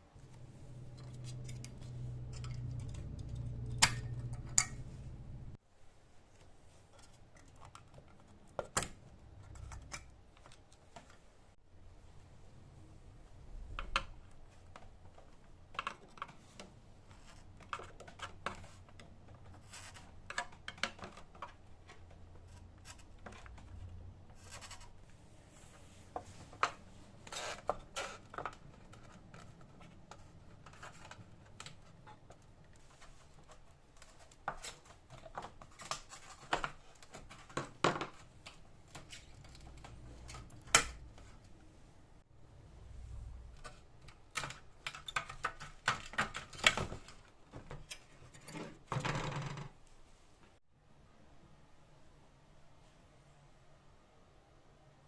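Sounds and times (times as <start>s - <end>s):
faint low hum: 0.0s - 19.6s, 38.4s - 44.2s
tools clicking and scraping: 0.8s - 5.5s.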